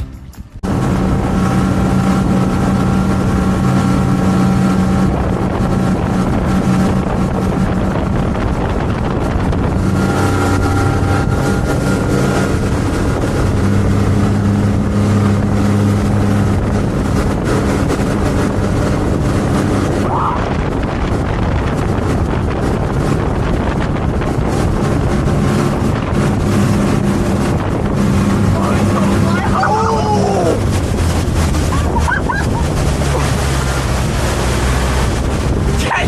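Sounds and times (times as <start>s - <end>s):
motorboat engine running: 0.0s - 36.0s
wind blowing on microphone: 0.0s - 36.0s.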